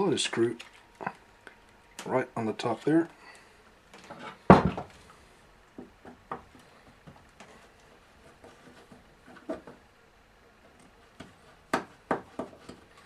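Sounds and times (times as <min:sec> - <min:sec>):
loud knock: 0:04.5 - 0:04.9.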